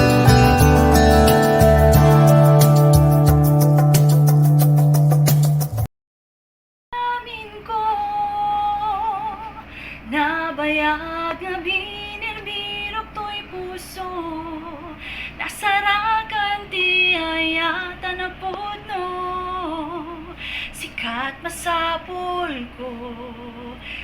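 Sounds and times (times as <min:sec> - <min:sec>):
instrumental backing: 0:00.0 - 0:05.9
woman singing a ballad: 0:07.0 - 0:24.0.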